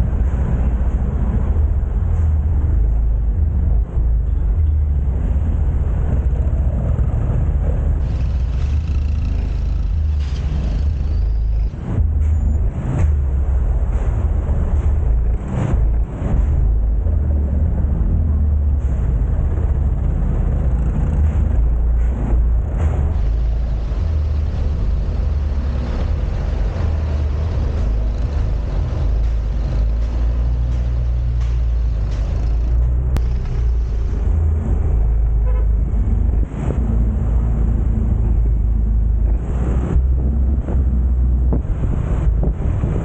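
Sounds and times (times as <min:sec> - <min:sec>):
wind rumble on microphone: 0:00.0 - 0:43.0
small motorcycle engine running: 0:08.0 - 0:11.8.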